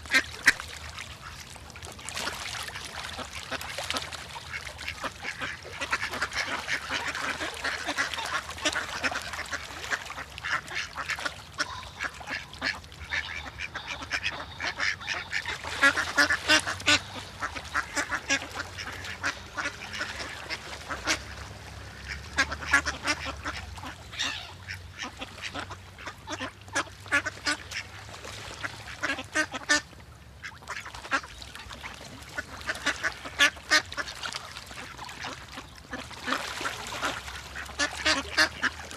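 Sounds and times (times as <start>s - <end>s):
flock of birds calling: 11.6s - 20.2s.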